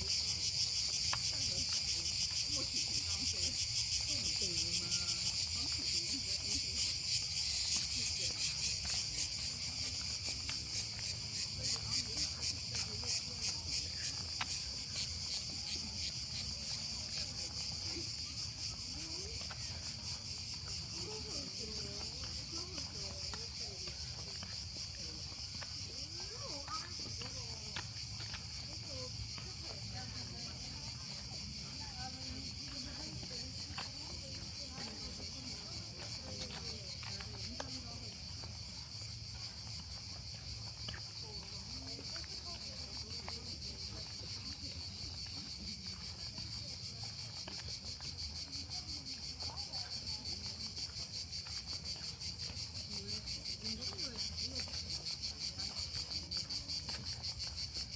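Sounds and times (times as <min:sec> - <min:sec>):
cicadas chirring: 0:00.0 - 0:57.9
light footsteps on trail: 0:00.0 - 0:57.9.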